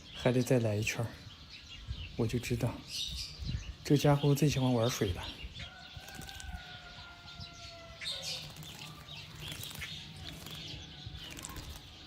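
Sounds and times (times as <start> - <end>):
small birds chirping: 0.0 - 12.0.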